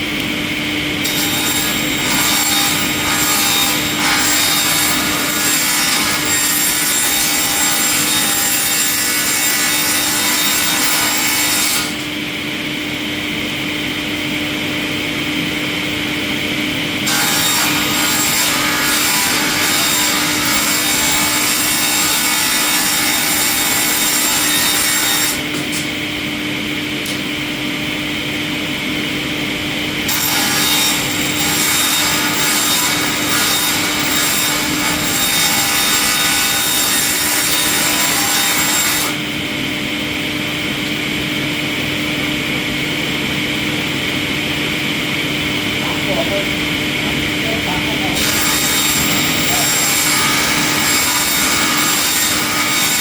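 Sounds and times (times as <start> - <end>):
wood-processing machine humming: 0.0 - 53.0
machine cutting wood: 1.0 - 12.1, 17.0 - 26.0, 30.1 - 39.2, 47.1 - 53.0.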